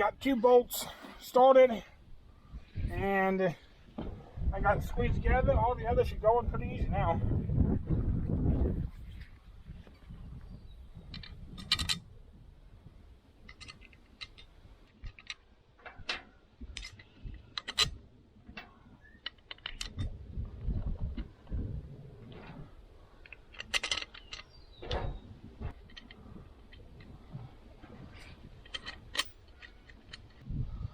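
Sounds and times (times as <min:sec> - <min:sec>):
metallic clicks of bolts and tools: 0:13.4 - 0:18.0, 0:23.2 - 0:27.2, 0:28.1 - 0:30.4.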